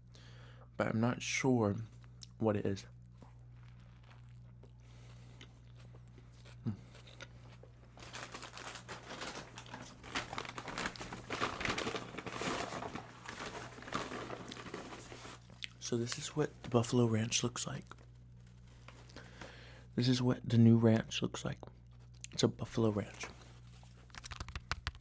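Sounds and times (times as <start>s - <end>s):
low electrical hum: 0.0s - 25.0s
paper and plastic packaging crinkling: 3.3s - 4.6s, 7.5s - 19.5s, 22.8s - 25.0s.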